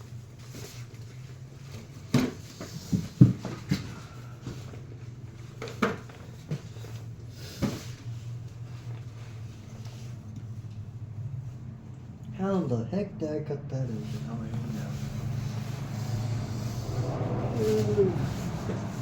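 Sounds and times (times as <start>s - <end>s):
steady low hum: 6.4s - 19.0s.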